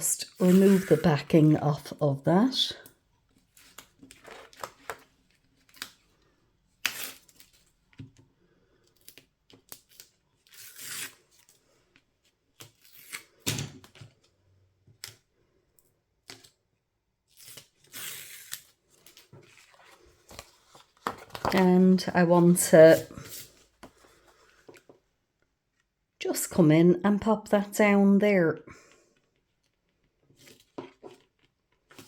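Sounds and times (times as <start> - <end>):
paper peeling off tape: 6.8 - 7.5, 9.0 - 11.2
paper rustling and tapping: 20.2 - 21.7.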